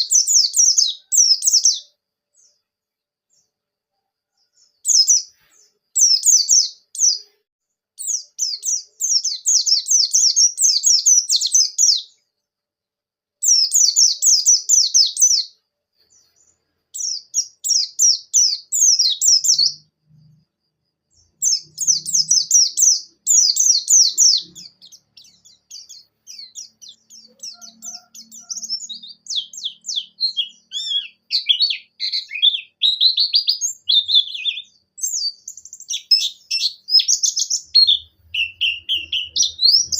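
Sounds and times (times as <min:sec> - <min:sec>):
bird twittering: 0:21.2 - 0:39.9.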